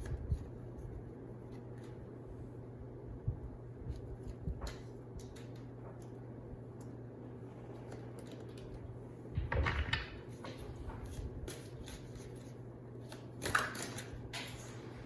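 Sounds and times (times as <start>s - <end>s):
low steady hum: 0.0s - 15.0s
cards being shuffled: 9.8s - 14.8s.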